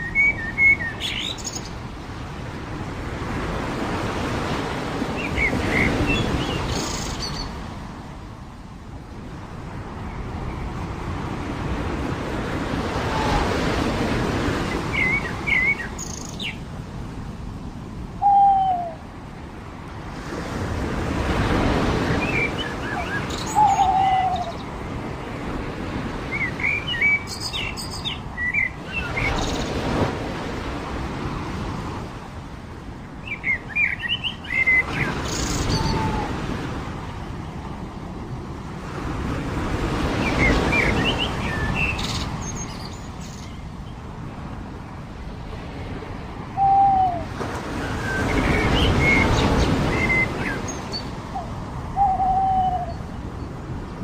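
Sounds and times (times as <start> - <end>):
birds chirping: 0.0 - 1.8, 14.6 - 16.6, 21.8 - 24.9, 26.2 - 29.8, 33.2 - 36.4, 40.1 - 44.2, 46.6 - 54.0.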